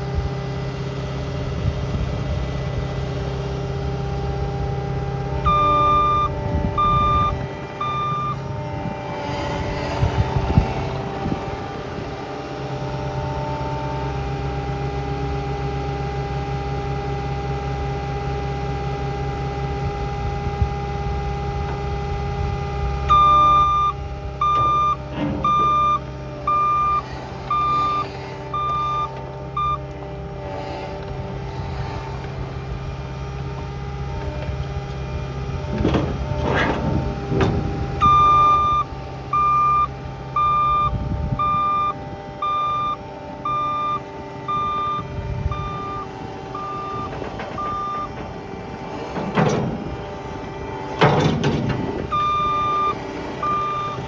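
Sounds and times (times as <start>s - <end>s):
diesel engine running: 0.0s - 54.0s
backup alarm beeping: 5.4s - 8.5s, 23.1s - 29.9s, 38.0s - 48.4s, 52.0s - 54.0s.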